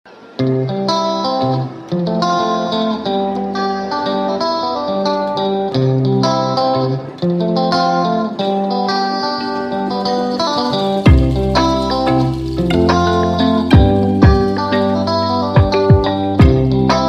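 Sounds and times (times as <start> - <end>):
plucked guitar melody: 0.1 - 17.0.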